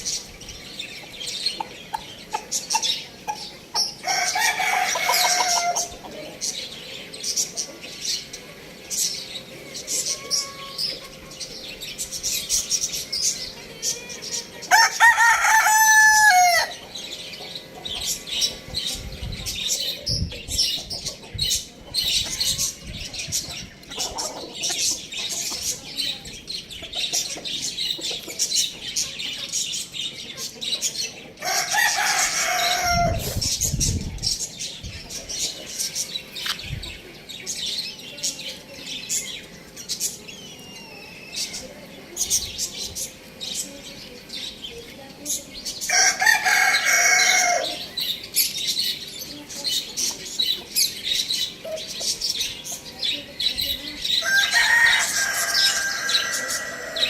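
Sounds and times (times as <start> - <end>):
chickens clucking: 0.0 - 57.0
chicks chirping: 0.0 - 57.0
rooster crowing: 14.7 - 16.7, 45.9 - 47.8, 54.2 - 57.0.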